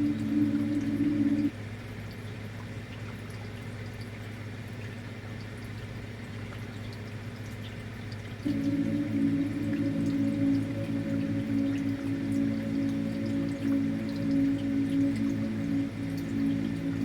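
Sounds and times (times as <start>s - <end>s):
low steady hum: 0.0s - 1.5s, 8.4s - 17.0s
singing bowl ringing: 8.5s - 17.0s.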